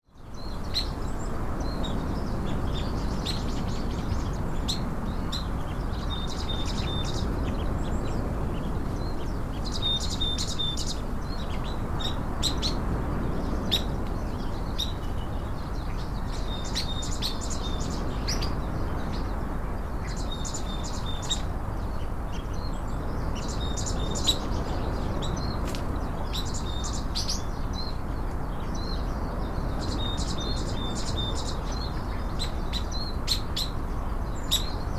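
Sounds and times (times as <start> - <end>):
small birds chirping: 0.0 - 34.9.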